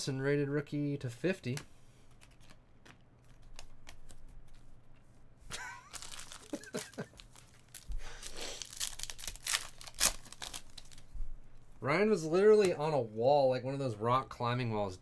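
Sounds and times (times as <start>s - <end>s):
cards clicking and rustling: 1.4s - 5.0s, 5.9s - 11.1s
wrappers tearing and crinkling: 5.6s - 11.1s.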